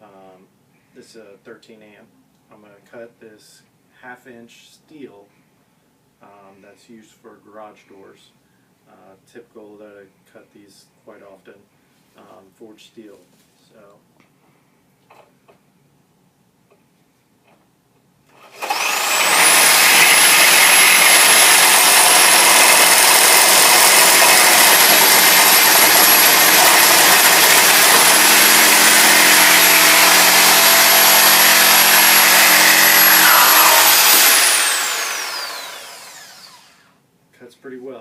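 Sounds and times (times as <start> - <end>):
reciprocating saw cutting steel: 18.3 - 36.9.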